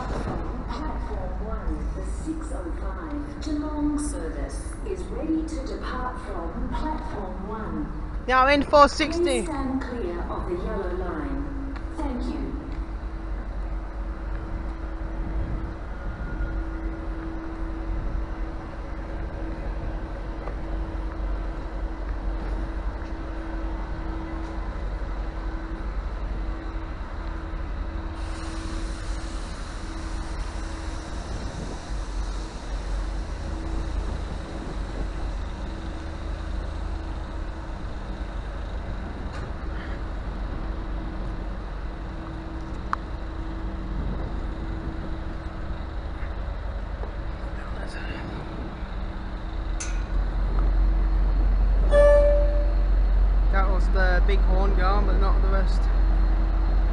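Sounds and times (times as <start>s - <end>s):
diesel locomotive idling: 0.0s - 56.9s
steady hiss: 27.3s - 39.3s.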